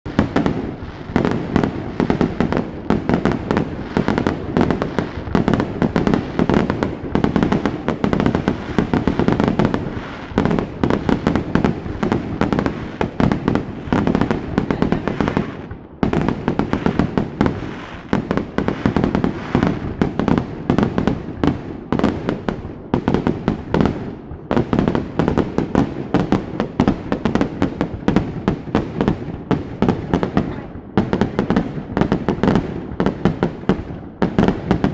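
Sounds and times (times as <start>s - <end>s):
fireworks bangs: 0.0s - 34.9s.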